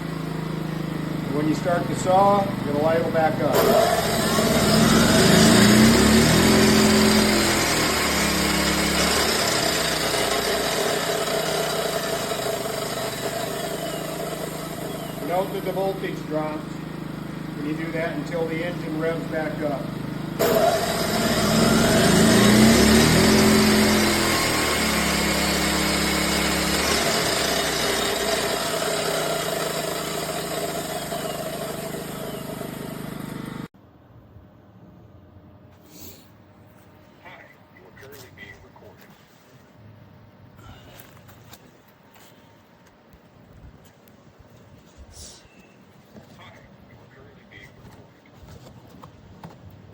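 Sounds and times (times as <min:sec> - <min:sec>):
chop saw running: 0:00.0 - 0:33.7
generator engine rising in pitch: 0:00.0 - 0:33.7.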